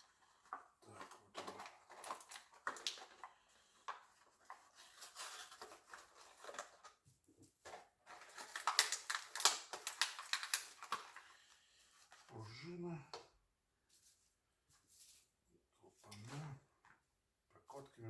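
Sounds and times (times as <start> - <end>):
plastic packaging crinkling: 0.0 - 6.9, 8.1 - 11.4.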